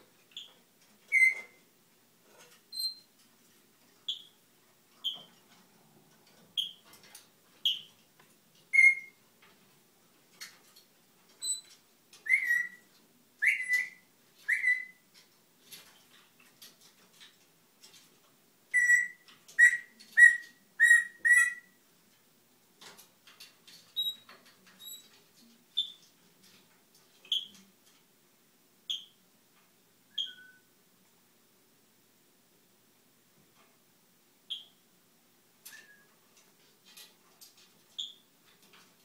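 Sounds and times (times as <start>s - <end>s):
parrot whistling chirps: 1.1s - 1.6s, 8.7s - 9.2s, 12.2s - 12.8s, 13.4s - 15.0s, 18.7s - 21.8s, 30.1s - 30.7s.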